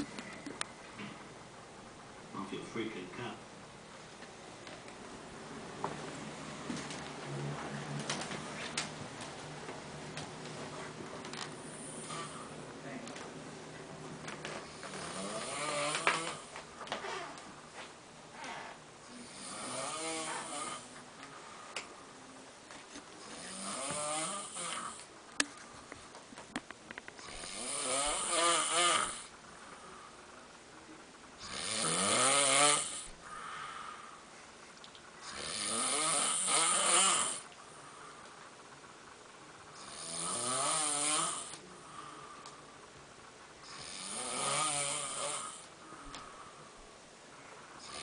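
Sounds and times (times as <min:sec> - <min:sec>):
person snoring: 0:11.6 - 0:12.6, 0:14.6 - 0:16.5, 0:19.1 - 0:21.0, 0:23.2 - 0:25.1, 0:27.2 - 0:29.3, 0:31.4 - 0:34.1, 0:35.2 - 0:37.5, 0:39.8 - 0:42.5, 0:43.6 - 0:46.5, 0:47.8 - 0:48.0.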